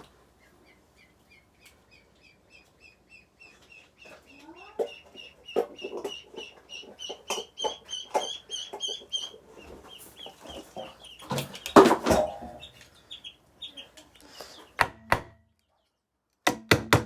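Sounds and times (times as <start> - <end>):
baby chicks peeping: 0.0 - 15.9
sharp knocks: 14.8 - 15.4, 16.5 - 17.0.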